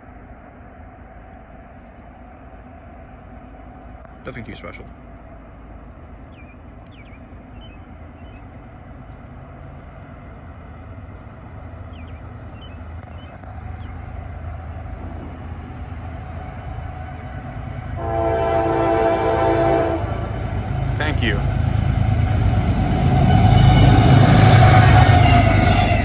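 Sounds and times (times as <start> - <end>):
diesel locomotive rumble: 0.0 - 26.0
train air horn blasts: 18.0 - 20.3, 23.0 - 26.0.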